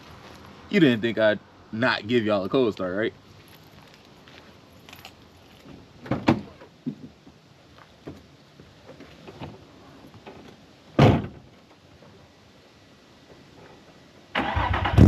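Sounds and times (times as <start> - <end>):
car door shutting thump: 11.0 - 11.4.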